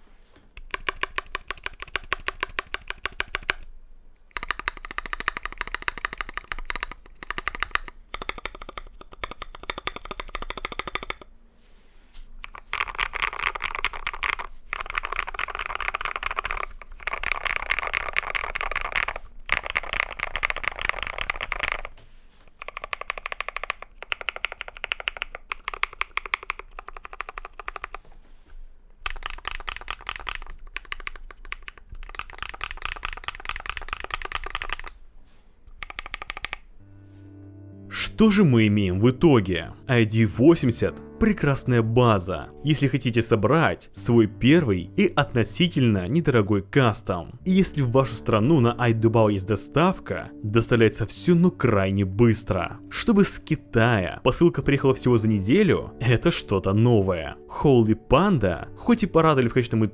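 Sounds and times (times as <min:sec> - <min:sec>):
mechanical keyboard key clacks: 0:00.6 - 0:03.7, 0:04.3 - 0:11.3, 0:12.5 - 0:21.9, 0:22.6 - 0:28.0, 0:29.1 - 0:34.9.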